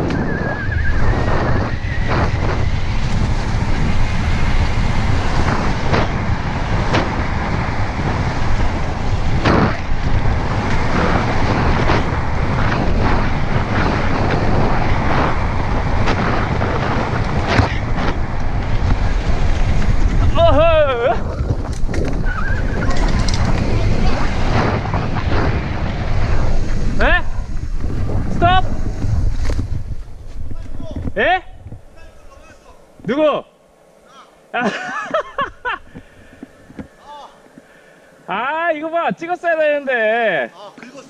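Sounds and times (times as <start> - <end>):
wind rushing over microphone: 0.0 - 40.3
bike knocks and rattles: 2.1 - 28.2.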